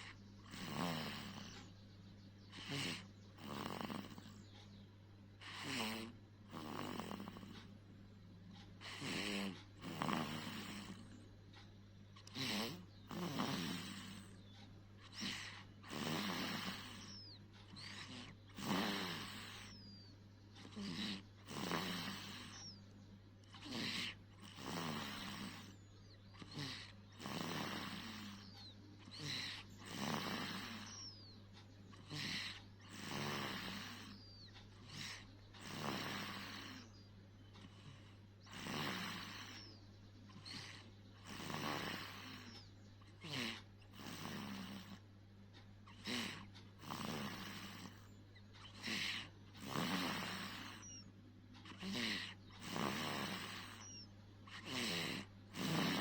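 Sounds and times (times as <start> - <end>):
person snoring: 0.0 - 1.6, 2.5 - 4.4, 5.4 - 7.7, 8.8 - 11.2, 12.2 - 14.4, 15.0 - 19.8, 20.6 - 22.8, 23.4 - 25.7, 26.4 - 31.1, 31.9 - 34.2, 34.8 - 36.9, 37.6 - 39.7, 40.3 - 45.0, 45.9 - 51.0, 51.6 - 56.0
steady low hum: 0.0 - 56.0.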